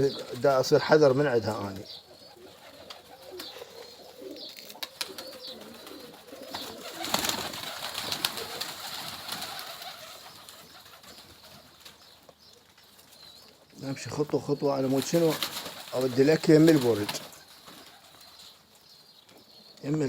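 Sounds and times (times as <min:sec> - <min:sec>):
pigeons cooing: 0:00.0 - 0:20.0
rustling: 0:01.8 - 0:13.8.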